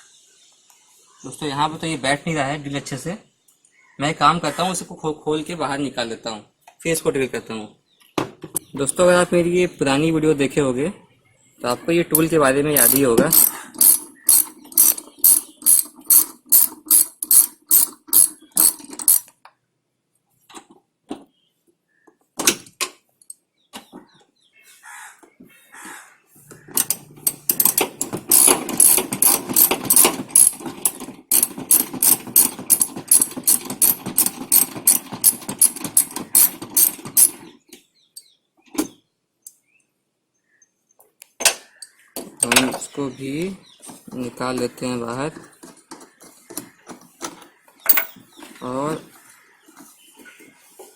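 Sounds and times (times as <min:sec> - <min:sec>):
tool handling taps: 0:12.1 - 0:19.4, 0:26.6 - 0:37.4, 0:47.8 - 0:48.5
ratchet wrench clicking: 0:12.2 - 0:19.3, 0:26.8 - 0:37.4.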